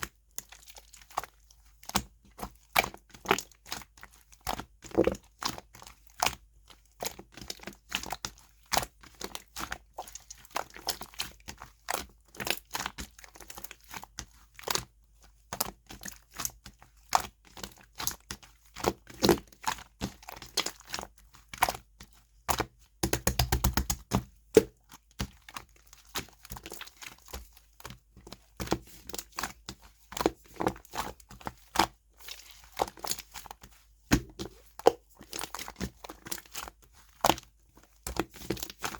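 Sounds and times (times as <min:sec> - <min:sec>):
rapid popping: 0:23.0 - 0:24.0.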